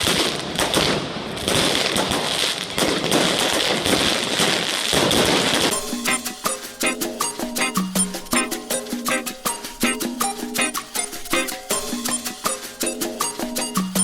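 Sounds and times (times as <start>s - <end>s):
latin dance music: 5.7s - 14.0s.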